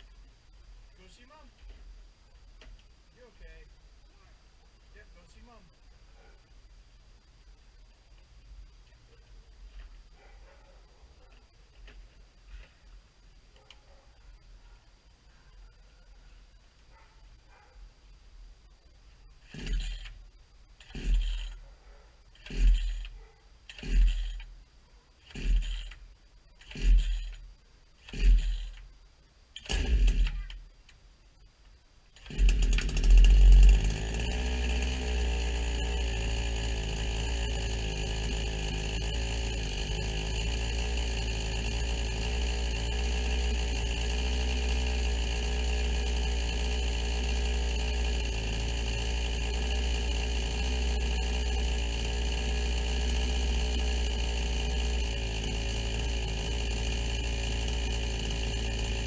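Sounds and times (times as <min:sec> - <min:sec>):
chainsaw engine starting and running: 0:19.4 - 0:21.6, 0:22.3 - 0:24.5, 0:25.2 - 0:29.0, 0:29.6 - 0:30.7, 0:32.2 - 0:59.0.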